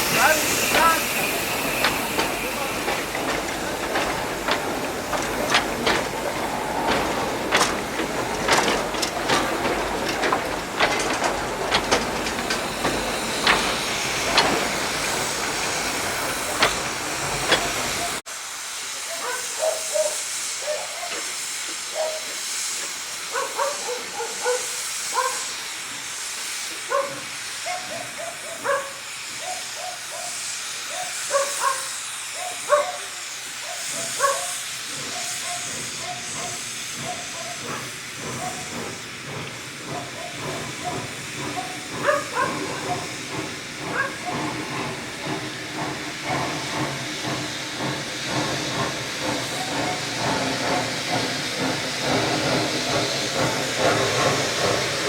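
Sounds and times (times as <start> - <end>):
steam hissing: 0.0 - 55.0
metal clanks and knocks: 0.7 - 17.9.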